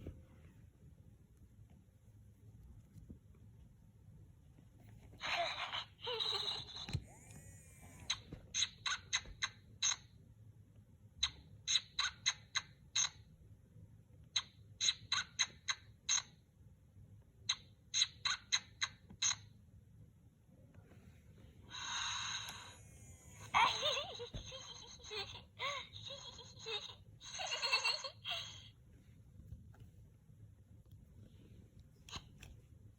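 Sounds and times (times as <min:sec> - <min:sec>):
toy electronic snoring pulses: 0:06.5 - 0:08.3, 0:21.9 - 0:23.9.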